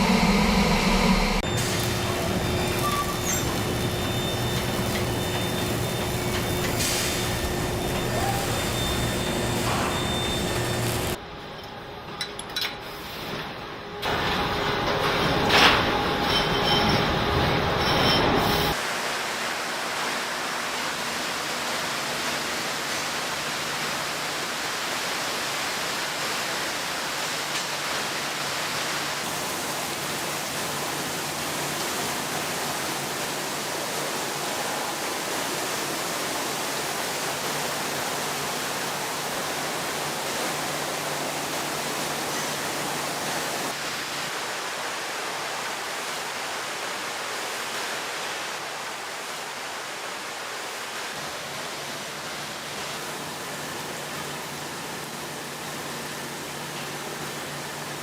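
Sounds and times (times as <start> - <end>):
hiss of rushing air: 0.0 - 11.2.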